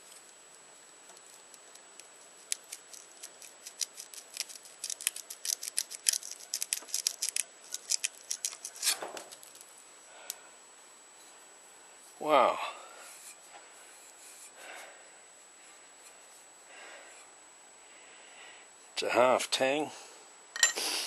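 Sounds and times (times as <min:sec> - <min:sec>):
small sharp clicks and ticks: 0:01.1 - 0:09.6.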